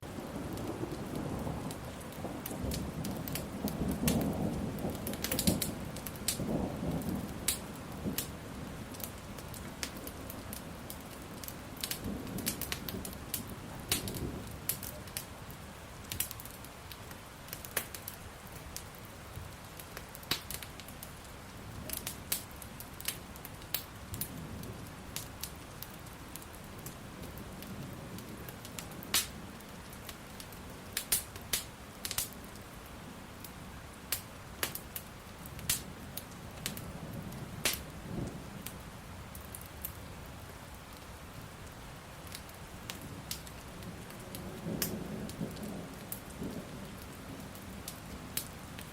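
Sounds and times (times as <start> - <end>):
thunder rumbling: 0.0 - 15.5, 43.0 - 48.9
steady rain: 0.0 - 48.9
wood fire crackling: 0.0 - 48.9.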